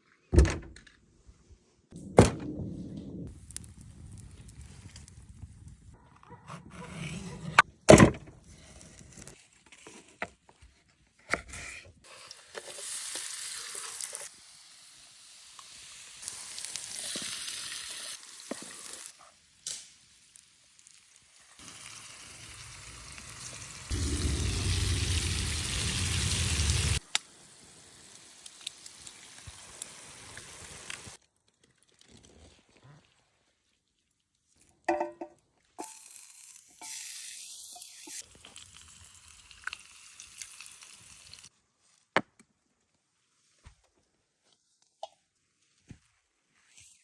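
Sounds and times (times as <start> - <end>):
food sizzling in a pan: 12.1 - 31.2, 35.8 - 41.5.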